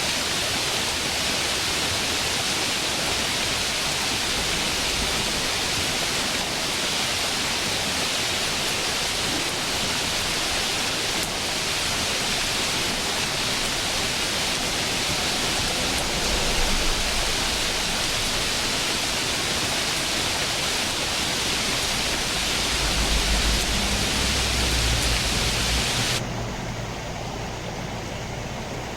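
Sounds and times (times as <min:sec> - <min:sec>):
stream water rushing: 0:00.0 - 0:28.9
low hum: 0:21.7 - 0:28.9.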